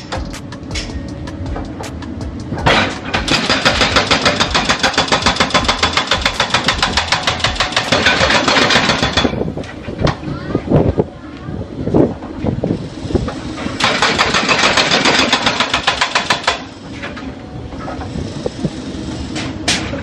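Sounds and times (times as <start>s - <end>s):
diesel engine running: 0.0s - 9.6s
hydraulic hammer pounding: 0.0s - 10.2s, 13.2s - 18.3s, 19.0s - 20.0s.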